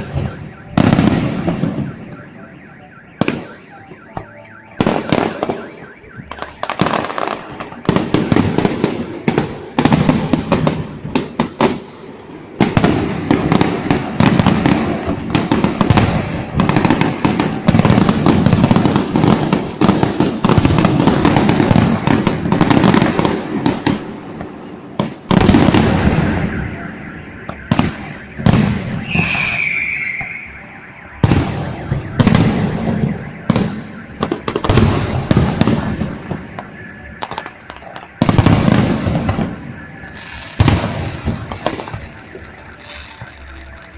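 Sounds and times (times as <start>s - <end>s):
loud firework bangs: 0.0s - 2.2s, 3.1s - 4.0s, 4.7s - 26.8s, 27.4s - 30.6s, 31.2s - 42.4s
falling firework whistle: 0.0s - 10.7s, 25.3s - 43.9s
fireworks bursts and crackling: 0.0s - 43.9s.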